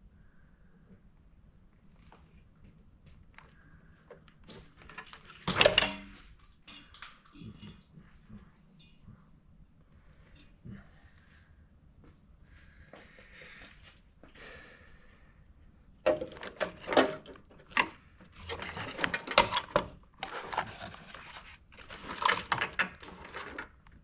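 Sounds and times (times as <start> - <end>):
car parts clattering and rattling: 4.5 - 7.1, 16.0 - 24.0.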